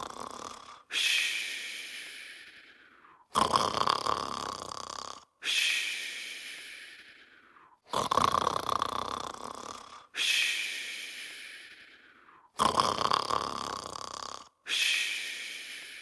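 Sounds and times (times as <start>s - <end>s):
breathy airy breath: 0.0s - 3.5s, 5.4s - 7.9s, 9.6s - 12.7s, 14.6s - 16.0s
cartoon character snoring: 0.0s - 7.1s, 7.8s - 10.6s, 12.4s - 16.0s.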